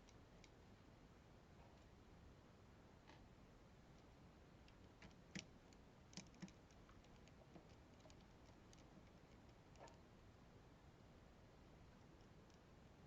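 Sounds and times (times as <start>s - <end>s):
small clicks and taps of computer parts: 6.1s - 9.5s.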